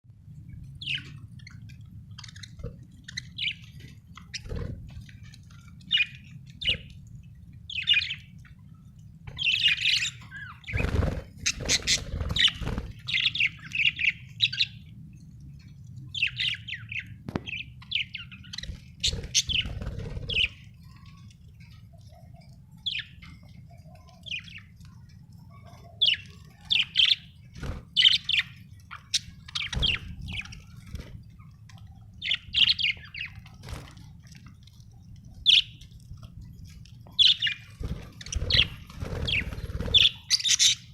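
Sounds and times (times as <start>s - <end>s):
low steady hum: 0.1s - 40.9s
budgerigars chirping: 9.4s - 14.8s, 38.2s - 40.9s.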